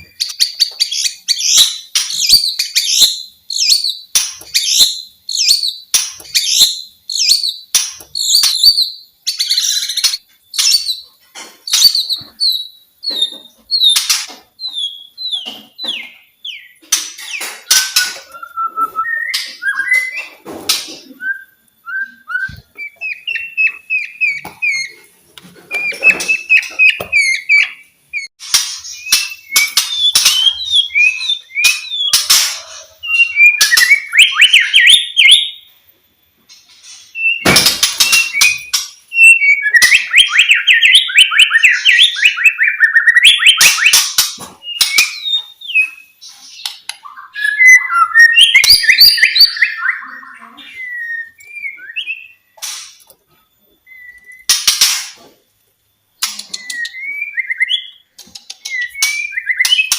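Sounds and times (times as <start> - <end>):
bird singing whistled phrases: 17.7 - 20.3, 21.2 - 25.0, 28.9 - 35.6, 38.1 - 44.0, 47.0 - 52.4, 53.8 - 54.5, 56.4 - 59.9.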